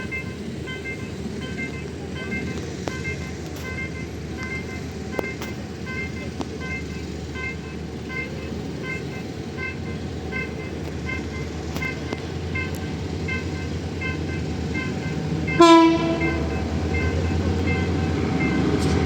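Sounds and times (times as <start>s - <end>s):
diesel locomotive rumbling: 0.0s - 19.0s
loud train horn blast: 0.0s - 19.0s
electronic warning chime: 9.6s - 18.8s.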